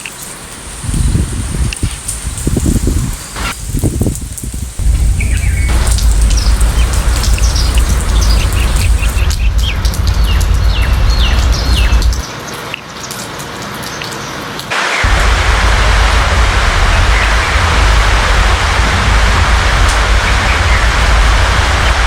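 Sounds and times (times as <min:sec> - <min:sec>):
steady rain: 0:00.0 - 0:22.0
deep rumble: 0:04.7 - 0:12.3, 0:15.0 - 0:22.0
birds chirping: 0:04.8 - 0:12.3.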